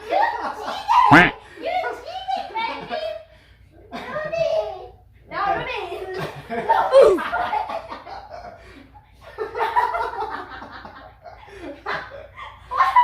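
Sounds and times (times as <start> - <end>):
people laughing: 6.1 - 13.0.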